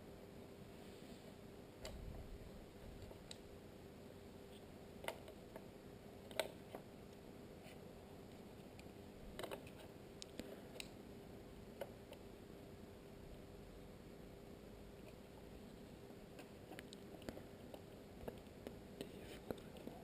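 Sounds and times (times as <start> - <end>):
small parts clicking and tapping: 8.7 - 11.0.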